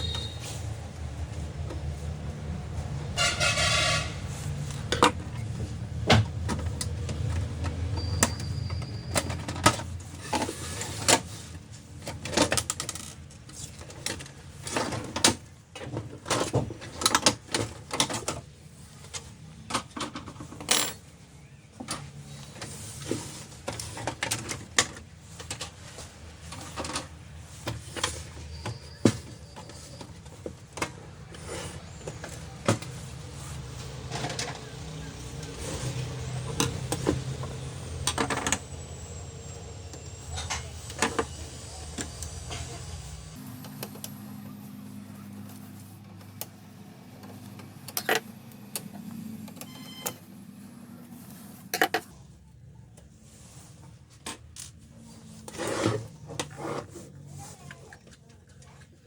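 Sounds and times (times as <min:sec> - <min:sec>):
plastic and metal parts clattering: 0:04.6 - 0:38.8.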